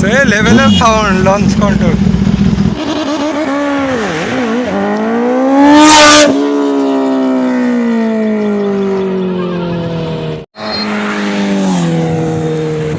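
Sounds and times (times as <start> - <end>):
motorcycle engine revving: 0.0 - 12.9.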